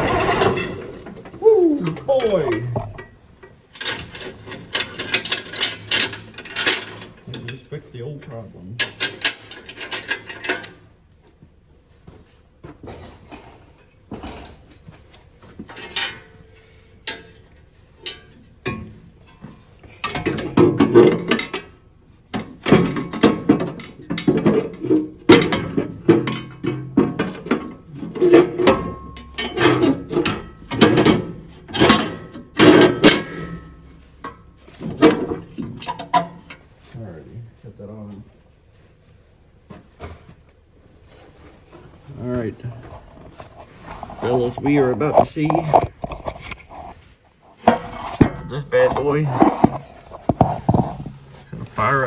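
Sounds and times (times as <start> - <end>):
hand tools clanking on metal: 0.0 - 10.9, 15.6 - 37.0, 42.8 - 52.0.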